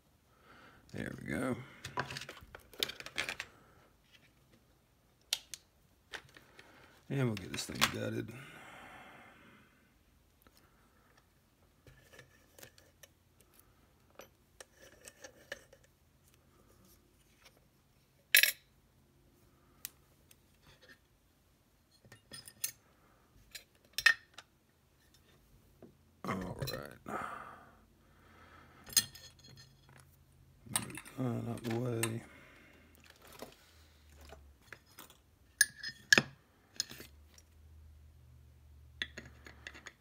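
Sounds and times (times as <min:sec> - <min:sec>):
padlock and tools clinking: 0:30.7 - 0:32.2.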